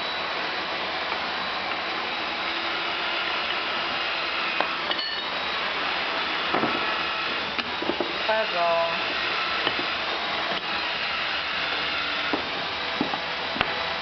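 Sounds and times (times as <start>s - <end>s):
shop machinery air noise: 0.0s - 14.0s
metallic clinks of tools: 4.9s - 5.3s.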